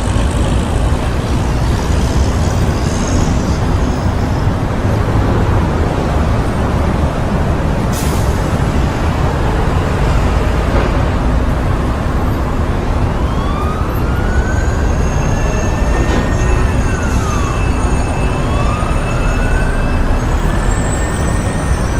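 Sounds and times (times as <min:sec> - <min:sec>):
traffic rumble: 0:00.0 - 0:21.9
emergency vehicle siren: 0:11.5 - 0:21.9.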